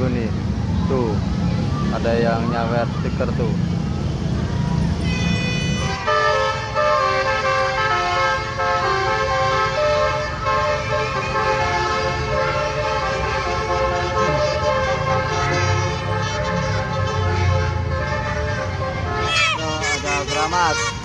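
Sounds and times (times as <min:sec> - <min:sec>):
bus horn playing a melody: 0:05.0 - 0:21.0.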